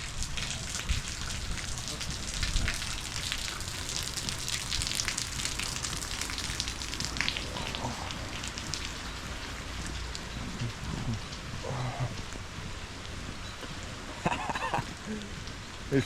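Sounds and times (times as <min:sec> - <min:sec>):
steady rain falling: 0:00.0 - 0:16.0.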